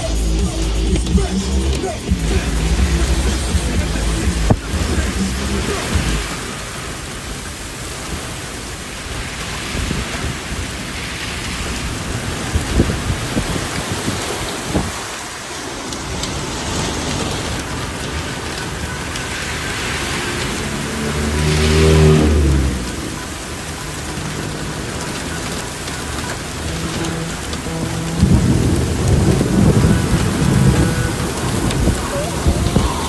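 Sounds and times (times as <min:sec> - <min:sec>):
low rumble: 0:00.0 - 0:08.5, 0:17.1 - 0:33.0
heavy rain pouring: 0:00.0 - 0:33.0
sharp drips and splashes: 0:00.0 - 0:33.0.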